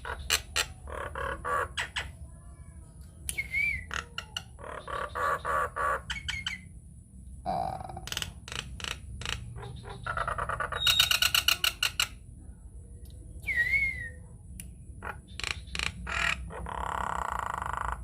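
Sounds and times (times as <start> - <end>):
bird whistle rising and falling: 3.4 - 3.9, 13.4 - 14.2.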